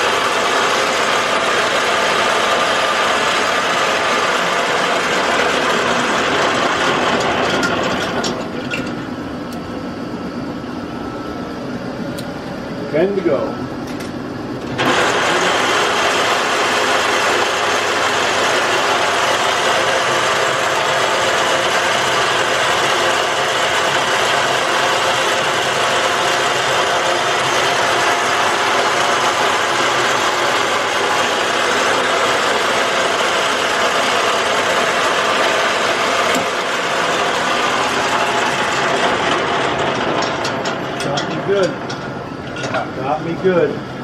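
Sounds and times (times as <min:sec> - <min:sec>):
machine tool grinding metal: 0:14.8 - 0:42.9.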